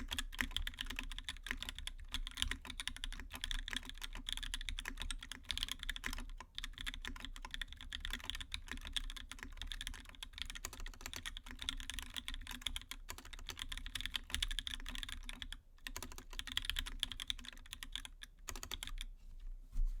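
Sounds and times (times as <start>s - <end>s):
mechanical keyboard typing: 0.0s - 19.1s.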